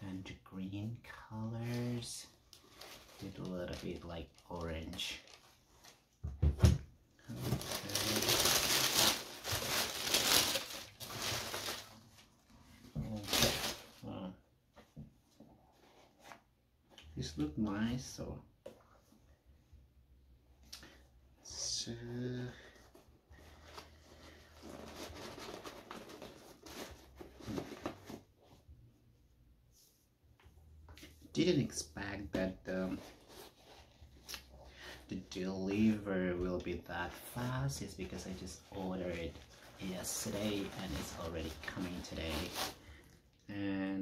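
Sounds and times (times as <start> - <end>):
shoes and packaging rustling: 1.6 - 6.2, 7.3 - 14.0, 22.7 - 28.4, 37.2 - 42.8
packaging rustling: 7.3 - 12.4, 23.5 - 28.2.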